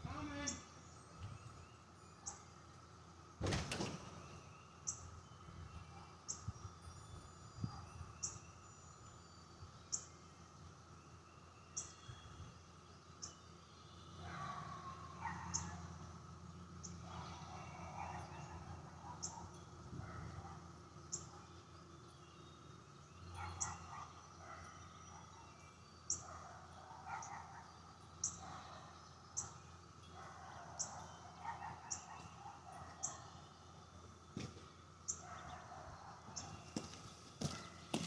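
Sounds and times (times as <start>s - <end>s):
faint animal sounds: 14.1s - 21.6s, 23.3s - 38.0s.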